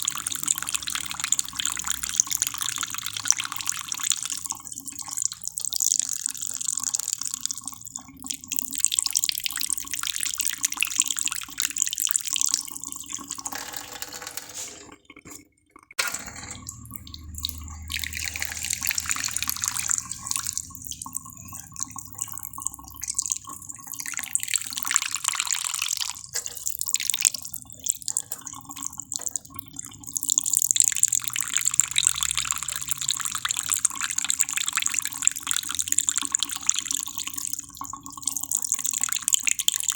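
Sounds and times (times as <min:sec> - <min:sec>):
water running from a tap: 0:00.0 - 0:15.3, 0:16.2 - 0:39.9.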